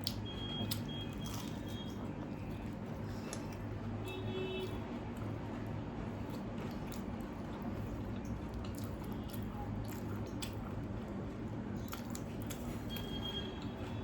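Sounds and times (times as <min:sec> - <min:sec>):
wet chewing mouth sounds: 0:06.2 - 0:13.7.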